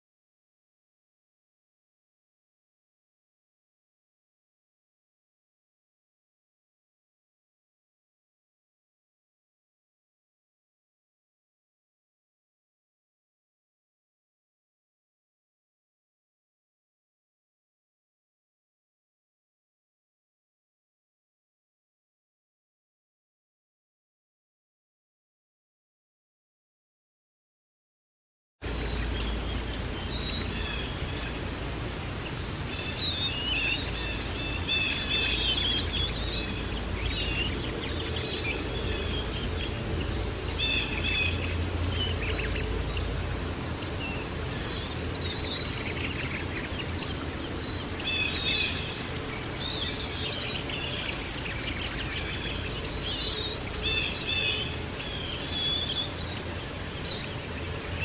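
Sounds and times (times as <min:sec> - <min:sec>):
songbirds chirping and trilling: 0:28.6 - 0:58.0
steady background hiss: 0:28.6 - 0:58.0.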